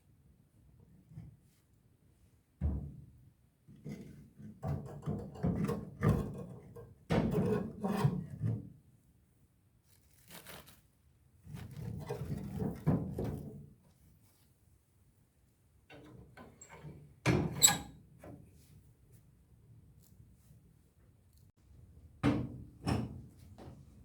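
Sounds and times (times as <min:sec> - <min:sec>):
scraping and handling noises: 0:09.8 - 0:14.5.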